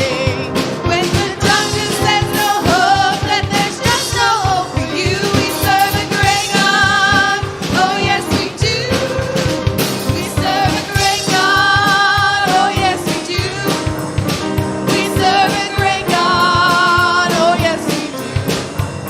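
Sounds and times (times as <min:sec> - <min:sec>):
person singing: 0:00.0 - 0:13.9
band with steady beat: 0:00.0 - 0:19.0.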